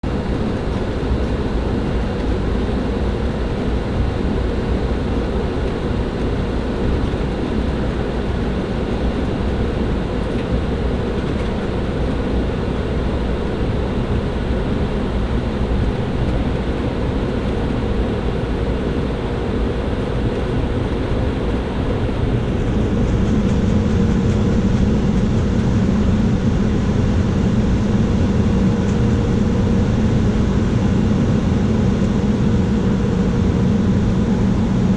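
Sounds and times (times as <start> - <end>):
airliner engines humming: 0.0 - 34.9
low rumble: 20.2 - 34.9.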